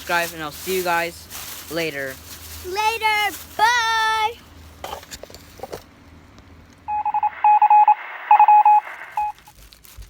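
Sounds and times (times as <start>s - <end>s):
short electronic beeps: 6.9s - 9.4s.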